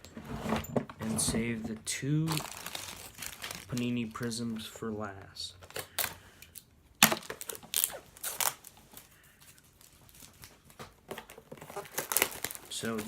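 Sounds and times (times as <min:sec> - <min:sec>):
packaging being torn: 0:02.2 - 0:03.9, 0:05.7 - 0:09.1, 0:11.1 - 0:13.0.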